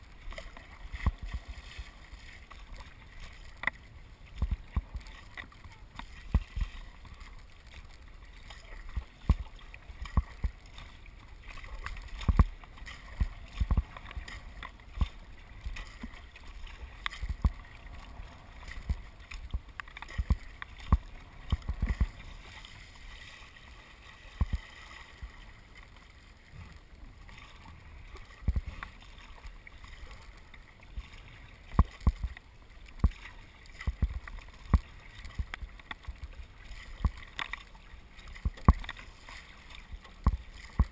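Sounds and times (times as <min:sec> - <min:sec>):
water splashing against hull: 0:00.0 - 0:40.9.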